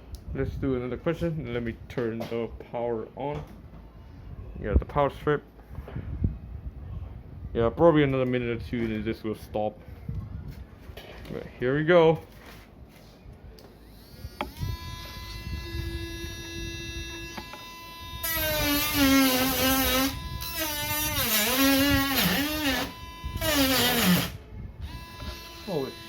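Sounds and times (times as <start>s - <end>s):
rotary tool whining: 13.7s - 26.0s
rotary tool grinding plastic: 17.2s - 24.4s.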